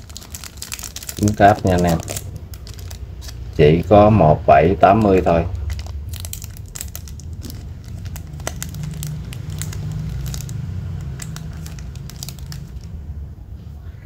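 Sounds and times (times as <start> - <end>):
crinkling handling noise: 0.0 - 13.1
steady low rumble: 0.0 - 14.0.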